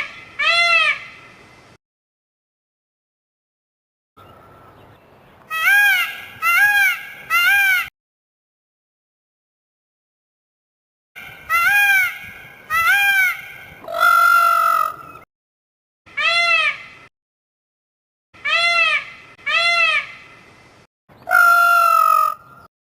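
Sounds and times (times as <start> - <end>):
peacock calling: 0.0 - 1.3, 4.2 - 7.9, 11.2 - 15.2, 16.1 - 17.0, 18.4 - 20.3, 21.2 - 22.7.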